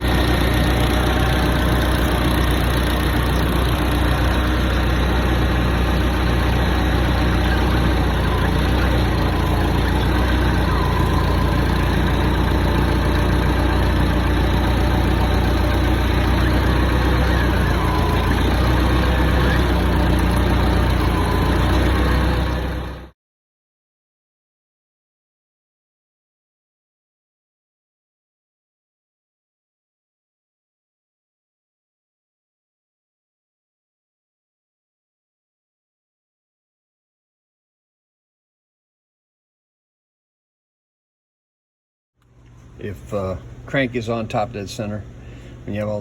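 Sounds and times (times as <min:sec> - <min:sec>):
forklift engine idling: 0:00.0 - 0:23.1.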